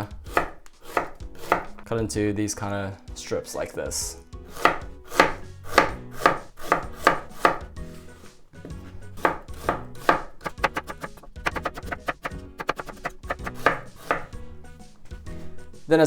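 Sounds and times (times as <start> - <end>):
knife cutting on cutting board: 0.0 - 1.9, 4.5 - 14.4.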